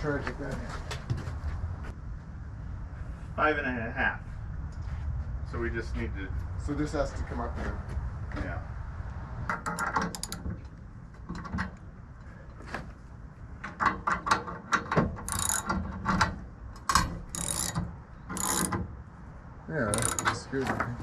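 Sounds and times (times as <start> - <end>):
ratchet clicking: 9.6 - 10.5, 15.2 - 15.9, 16.8 - 18.9, 19.9 - 20.4.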